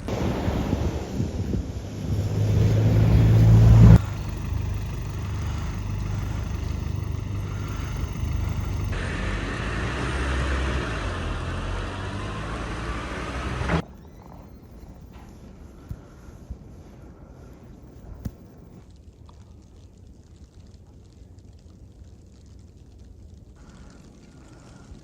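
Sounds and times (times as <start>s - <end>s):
vehicle engines running: 0.0s - 14.0s.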